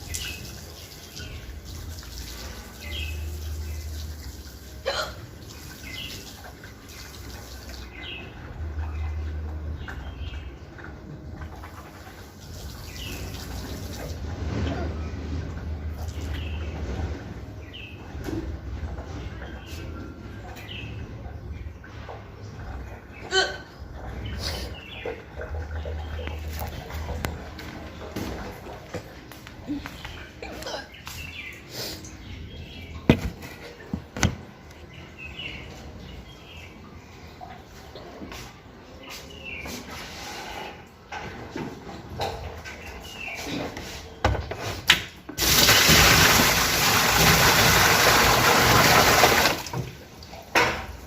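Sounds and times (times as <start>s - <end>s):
water running: 0.0s - 9.7s, 11.4s - 14.2s, 45.4s - 51.0s
low even background noise: 0.0s - 45.4s.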